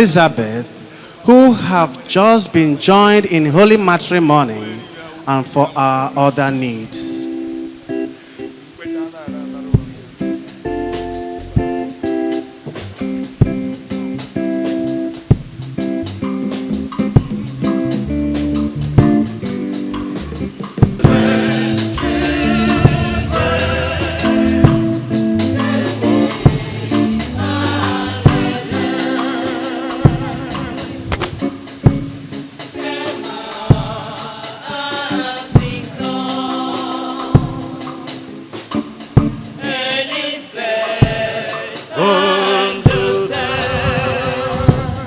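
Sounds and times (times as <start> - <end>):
gospel singing: 0.0 - 12.8, 20.1 - 45.0
band with bass and keyboard: 6.9 - 34.3, 35.2 - 39.7
drum hits: 9.7 - 11.9, 12.6 - 34.3, 35.5 - 39.7, 41.0 - 41.6, 42.8 - 45.0.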